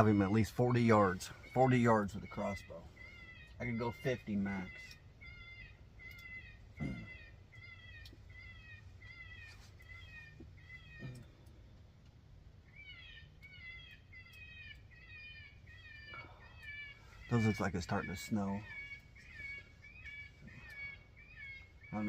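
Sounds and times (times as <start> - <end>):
electronic cat-like distress cries: 2.4 - 5.6, 6.8 - 8.5.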